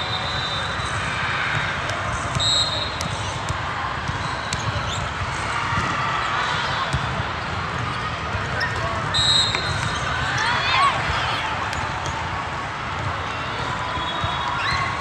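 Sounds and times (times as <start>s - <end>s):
hum of activity in large hall: 0.0s - 15.0s
sneaker squeak: 0.2s - 3.5s, 4.1s - 5.5s, 8.5s - 11.0s.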